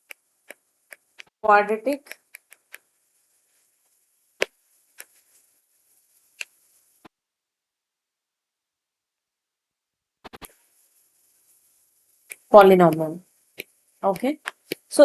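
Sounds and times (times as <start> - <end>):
sharp clicks or taps: 10.2 - 10.5.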